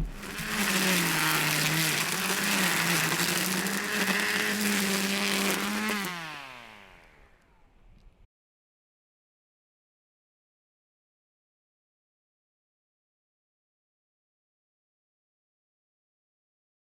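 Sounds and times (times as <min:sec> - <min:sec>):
string trimmer whirring: 0:00.0 - 0:07.8.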